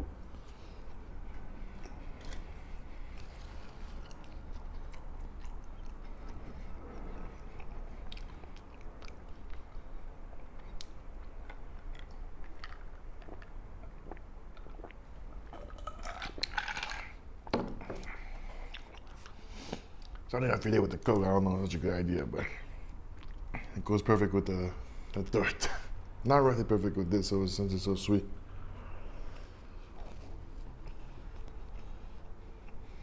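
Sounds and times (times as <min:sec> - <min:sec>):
person chewing bread: 0:00.0 - 0:20.3, 0:22.4 - 0:23.8, 0:28.8 - 0:33.0
low steady hum: 0:00.0 - 0:33.0.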